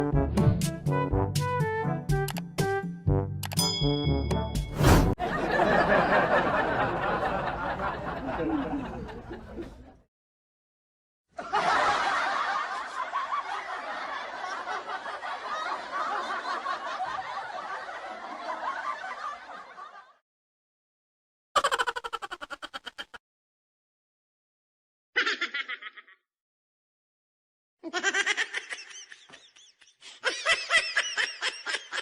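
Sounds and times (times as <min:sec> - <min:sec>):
recorded laughter: 0:05.2 - 0:10.0, 0:21.6 - 0:23.2, 0:25.2 - 0:26.2, 0:27.8 - 0:32.0.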